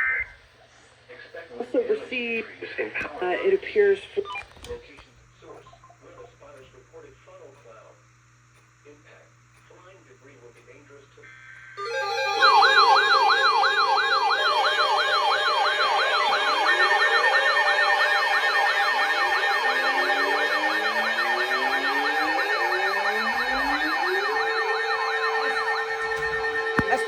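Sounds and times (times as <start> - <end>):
electronic siren yelping: 0.0 - 0.4, 11.8 - 27.0.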